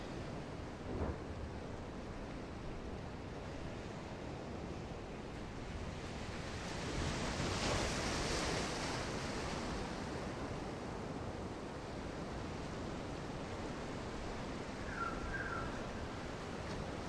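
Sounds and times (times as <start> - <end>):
sea waves washing onto shore: 3.0 - 14.8.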